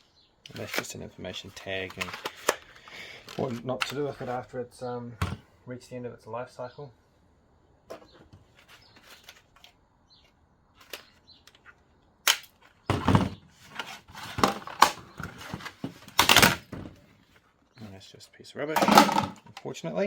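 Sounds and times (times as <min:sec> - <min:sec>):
clattering knocks: 0:18.8 - 0:19.5.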